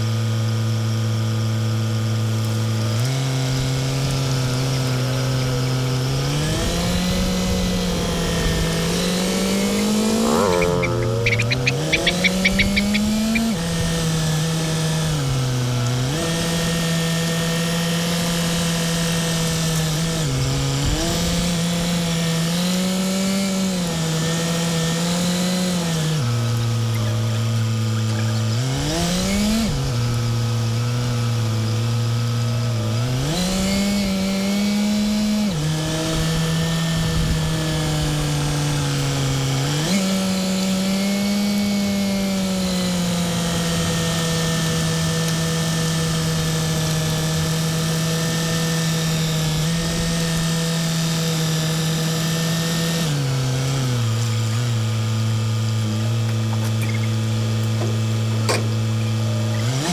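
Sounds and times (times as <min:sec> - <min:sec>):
motor humming: 0:00.6 - 0:21.8.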